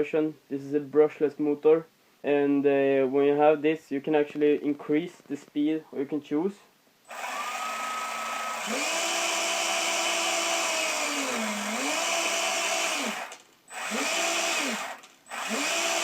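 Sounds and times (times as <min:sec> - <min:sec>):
electric motor whining: 0:07.1 - 0:16.0.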